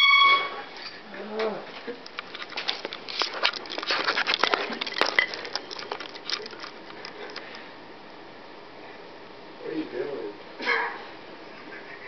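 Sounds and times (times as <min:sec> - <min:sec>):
rustling of people scrambling: 0:01.1 - 0:07.8.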